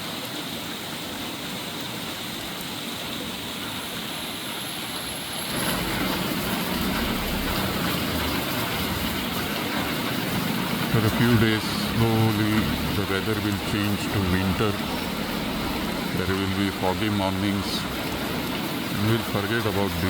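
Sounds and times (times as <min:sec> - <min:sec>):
steady rain hiss: 0:00.0 - 0:20.0
low engine rumble: 0:05.1 - 0:20.0.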